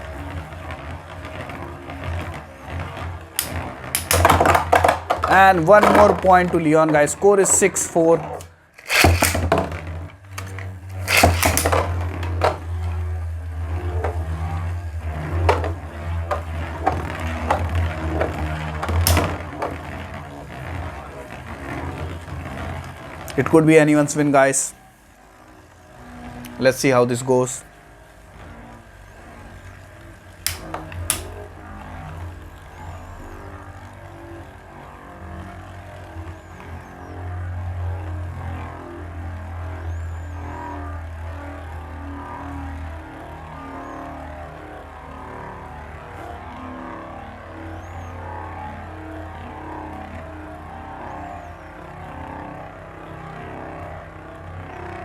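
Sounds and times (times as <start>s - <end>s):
loud hit of spinning tops: 3.4s - 6.2s, 8.4s - 12.6s
spinning tops clashing clicks: 3.4s - 6.2s, 7.4s - 12.4s, 30.5s - 31.3s
spinning tops humming: 3.4s - 13.0s.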